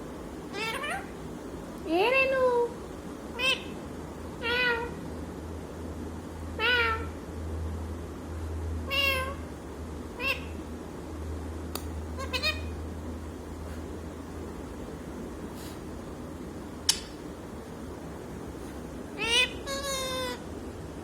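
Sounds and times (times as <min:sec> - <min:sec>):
parrot mimicking meow: 0:00.5 - 0:01.2, 0:03.3 - 0:03.7, 0:04.4 - 0:05.0, 0:06.6 - 0:07.2, 0:08.9 - 0:09.4, 0:10.2 - 0:10.6, 0:12.2 - 0:12.8, 0:19.2 - 0:20.4.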